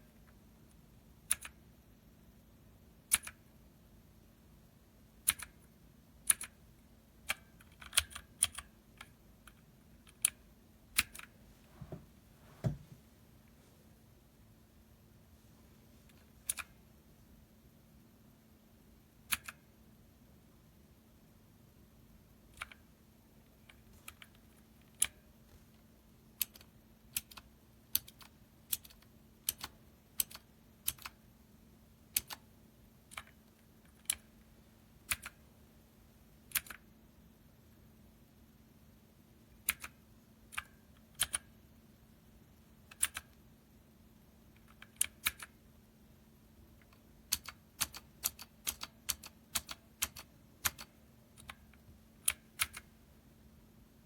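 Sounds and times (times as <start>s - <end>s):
mechanical keyboard keystrokes: 1.2s - 1.6s, 3.1s - 3.4s, 6.2s - 6.6s, 7.2s - 10.4s, 19.3s - 19.6s, 26.4s - 31.2s, 32.1s - 32.4s, 35.1s - 35.4s, 39.6s - 41.5s, 42.9s - 43.4s, 44.6s - 45.6s, 46.8s - 52.9s.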